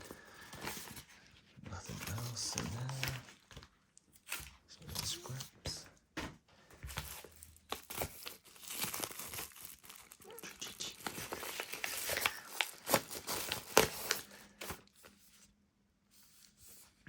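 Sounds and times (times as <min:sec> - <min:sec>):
packing material crumpling: 0:06.9 - 0:15.3.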